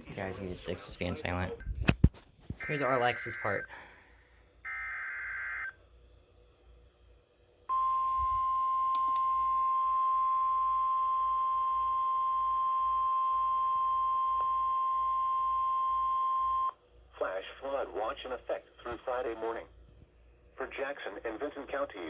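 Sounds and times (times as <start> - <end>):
buzzy warbling data burst: 2.6 - 3.7.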